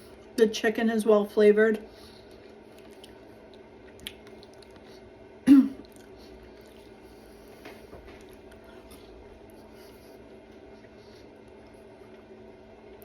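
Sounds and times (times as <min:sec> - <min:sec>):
steady low hum: 0:00.0 - 0:13.0
woman clearing her throat: 0:05.5 - 0:05.8.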